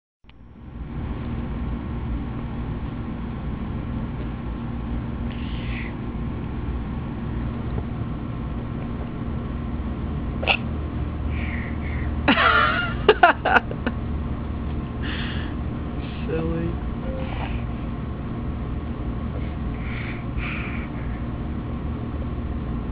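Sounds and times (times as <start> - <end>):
low background hum: 0.3 - 22.9
baby vocalizing: 5.3 - 6.0, 19.4 - 21.2.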